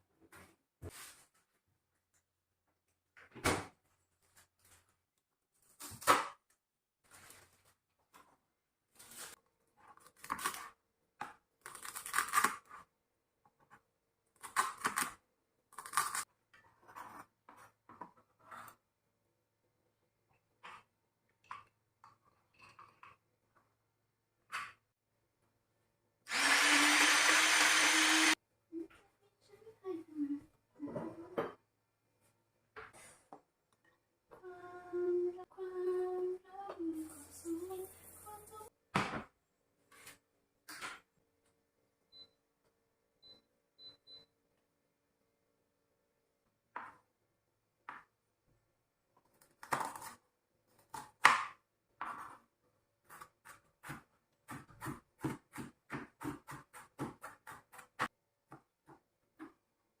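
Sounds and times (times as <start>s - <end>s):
person humming: 34.3s - 38.7s
knife chopping on cutting board: 53.1s - 59.0s.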